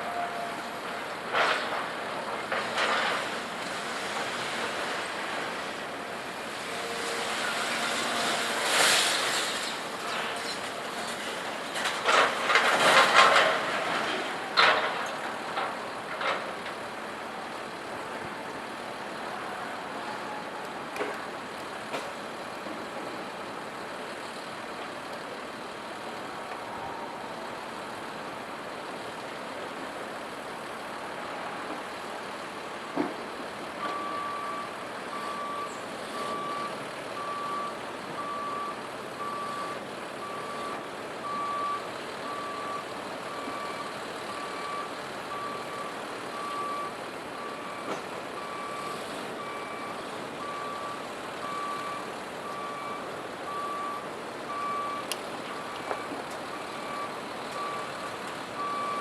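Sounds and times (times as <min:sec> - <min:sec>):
reversing alarm beeping: 0:00.0 - 0:00.6, 0:33.8 - 0:59.0.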